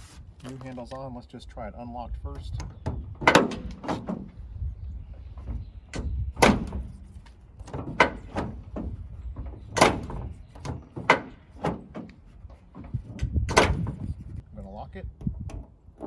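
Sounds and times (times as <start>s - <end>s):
tailgate latch clunks and clicks: 2.5s - 4.3s, 5.9s - 6.9s, 7.6s - 12.2s, 12.8s - 14.1s.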